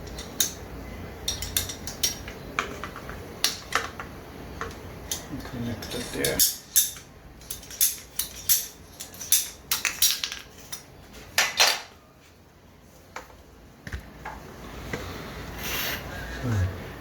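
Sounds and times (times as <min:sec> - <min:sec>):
tools and pipe fittings clinking: 0:01.2 - 0:03.9, 0:04.6 - 0:11.9.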